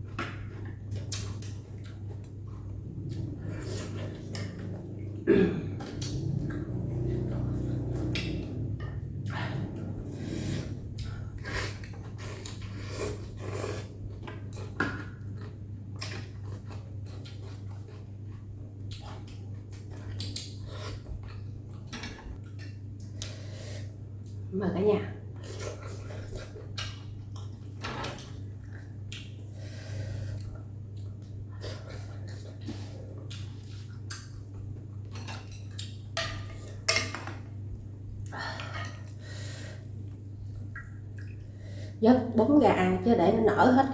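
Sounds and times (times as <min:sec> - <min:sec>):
low hum: 0:00.0 - 0:23.2
slurping and chewing noodles: 0:00.9 - 0:05.2, 0:06.0 - 0:21.4
utensils clinking against a bowl: 0:35.0 - 0:37.4.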